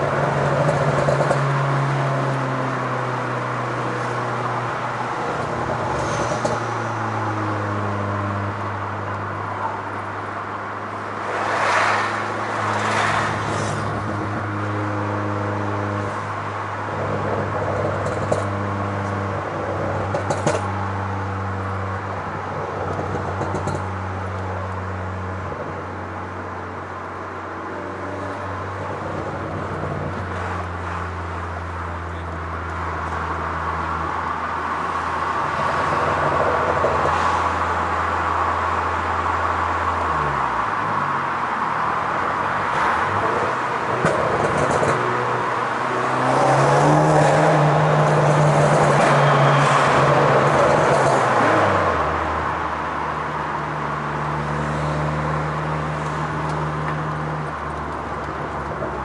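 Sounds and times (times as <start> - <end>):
sharp exhaust pops: 23.0 - 23.9.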